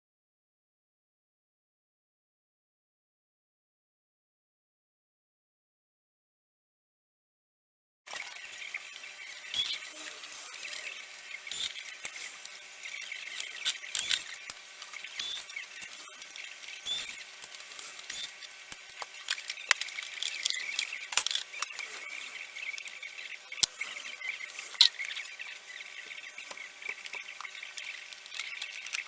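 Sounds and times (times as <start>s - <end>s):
clicks and scrapes of machine parts: 11.5s - 29.0s.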